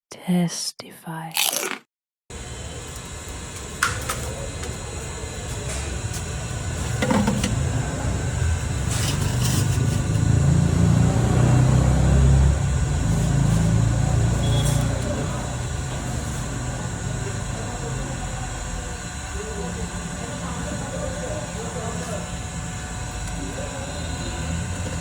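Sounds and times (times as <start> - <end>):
engine rumble: 6.4 - 18.2.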